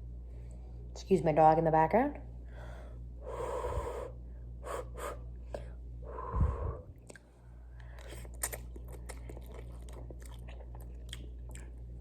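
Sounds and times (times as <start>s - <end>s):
low electrical hum: 0.0s - 12.0s
person chewing noodles: 7.0s - 12.0s.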